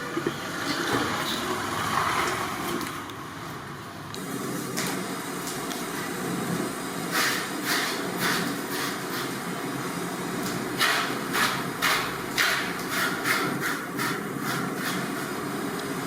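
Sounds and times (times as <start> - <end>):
blade chopping meat: 10.8 - 15.4.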